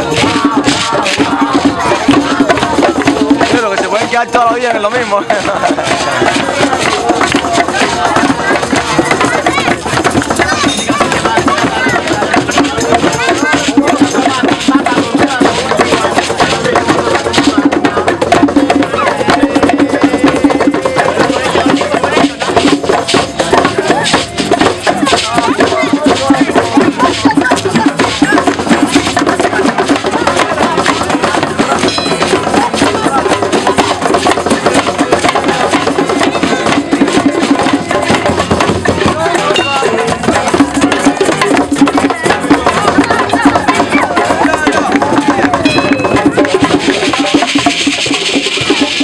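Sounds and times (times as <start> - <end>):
rapid percussive knocking clicks: 0.0 - 49.0.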